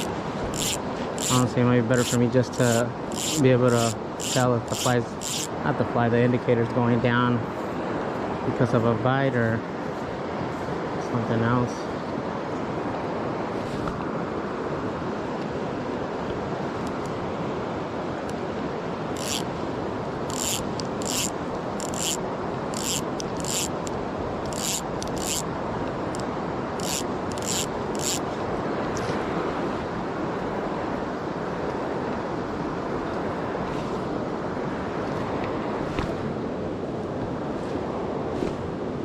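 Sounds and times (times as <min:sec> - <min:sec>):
wind noise on microphone: 0:00.0 - 0:06.0.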